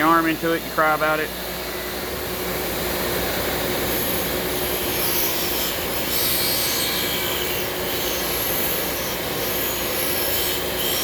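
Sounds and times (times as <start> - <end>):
metal rasping against grinder: 3.9 - 11.0.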